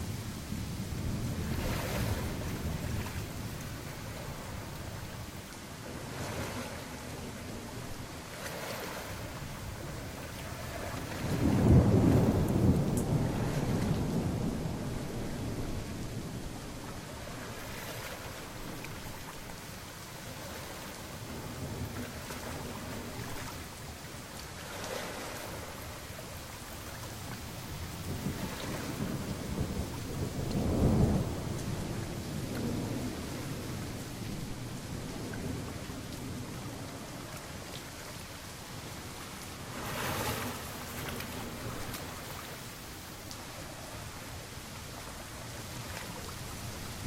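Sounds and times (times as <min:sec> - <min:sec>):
steady rain falling: 0:00.0 - 0:47.0
rolling thunder: 0:09.6 - 0:19.3, 0:27.5 - 0:37.3.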